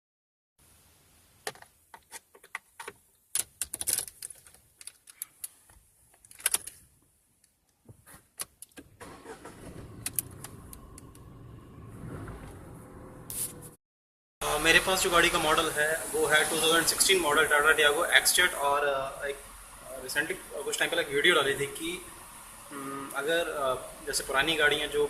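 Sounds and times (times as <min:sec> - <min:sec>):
car engine starting and idling: 0:08.8 - 0:13.7, 0:14.4 - 0:25.0.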